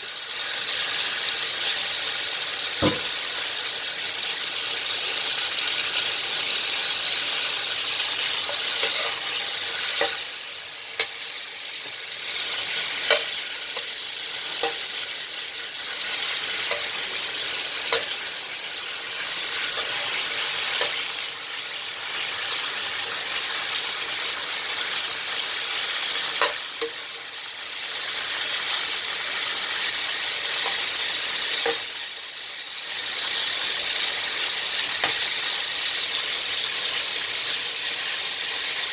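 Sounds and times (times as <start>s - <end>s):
food sizzling in hot oil: 0.0s - 38.9s
spatula clicking against pan: 8.5s - 10.3s, 11.0s - 11.2s, 13.0s - 14.0s, 14.6s - 15.1s, 16.4s - 18.2s, 19.7s - 21.1s.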